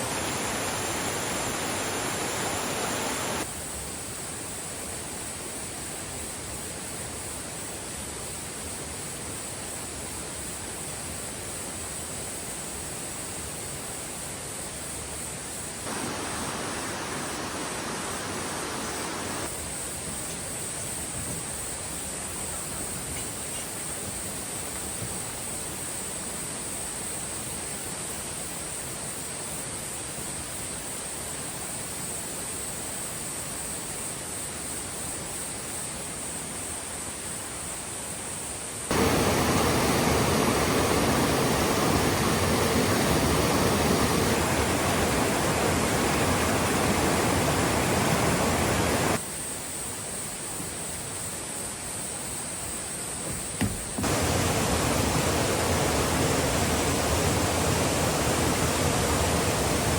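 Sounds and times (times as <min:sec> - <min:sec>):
stream rushing: 0:00.0 - 0:03.5, 0:15.8 - 0:19.5, 0:38.9 - 0:49.2, 0:53.1 - 0:59.9
insects chirring: 0:00.0 - 0:59.9.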